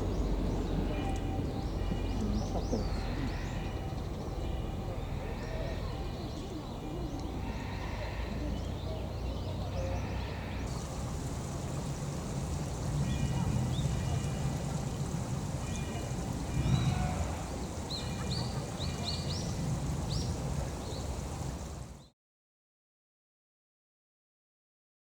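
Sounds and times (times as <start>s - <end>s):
high bird calls: 10.3s - 22.0s
steady low rumble: 10.7s - 22.0s.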